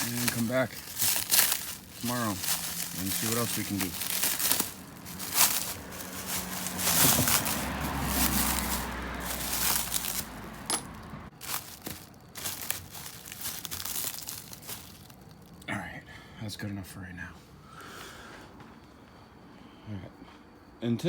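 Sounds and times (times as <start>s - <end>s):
plastic sheeting rustling: 0.0s - 10.7s, 11.3s - 15.2s.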